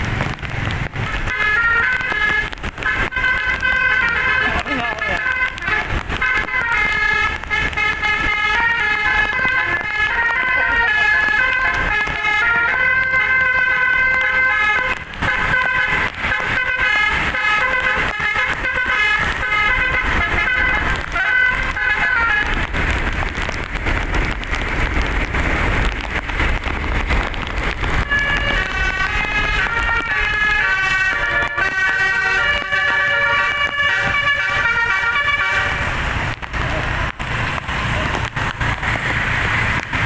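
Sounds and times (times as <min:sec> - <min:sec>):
musical air horn tune: 0:28.0 - 0:35.9.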